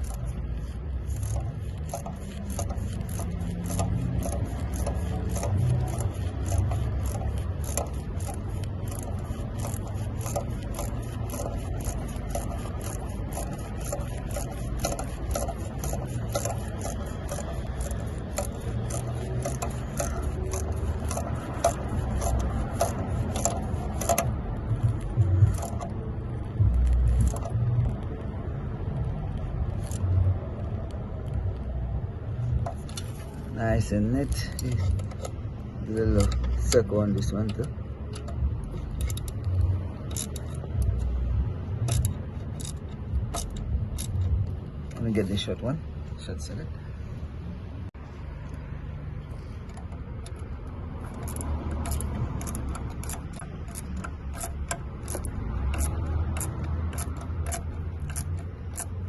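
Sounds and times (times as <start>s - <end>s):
hand ratchet clicking: 0.0s - 28.3s, 28.9s - 45.6s, 49.2s - 59.0s.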